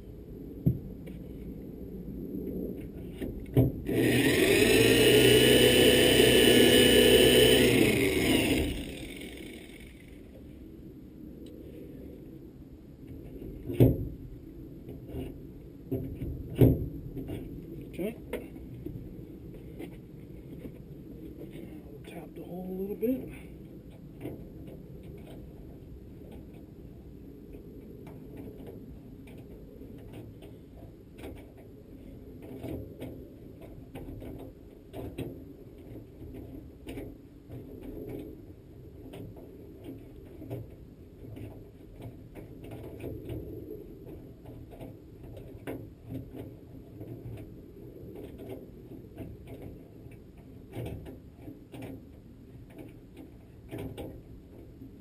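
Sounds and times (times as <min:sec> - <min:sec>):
drill boring into steel: 0:03.9 - 0:10.1
drill bit clicks and ticks: 0:03.9 - 0:10.2.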